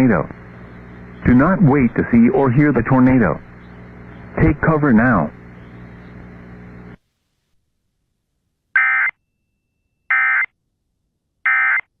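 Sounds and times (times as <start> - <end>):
faint radio hiss with hum: 0.0 - 8.8.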